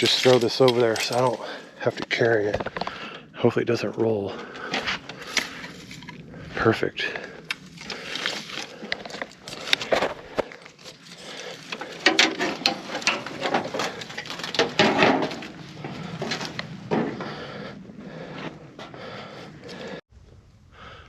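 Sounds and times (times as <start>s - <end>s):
footsteps through dry brush: 0.0s - 3.0s, 7.5s - 20.0s.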